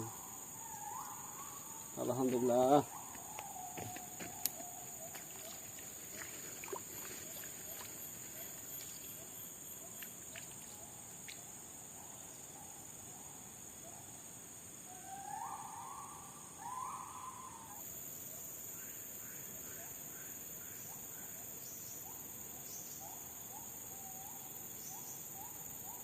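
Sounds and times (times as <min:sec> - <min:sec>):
high-pitched insect drone: 0:00.0 - 0:11.4
bird calls: 0:00.0 - 0:14.1, 0:14.9 - 0:17.8, 0:18.7 - 0:26.0.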